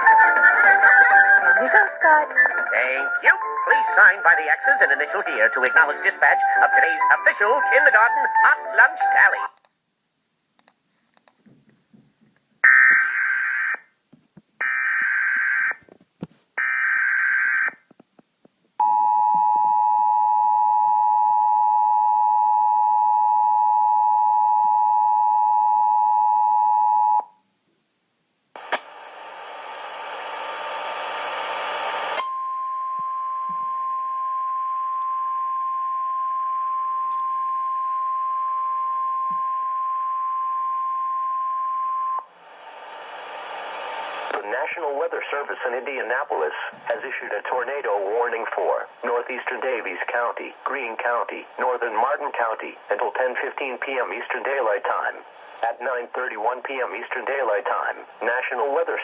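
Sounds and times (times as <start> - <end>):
static hiss: 28.6 - 32.2, 42.2 - 47.3
two-tone attention signal: 32.2 - 42.3.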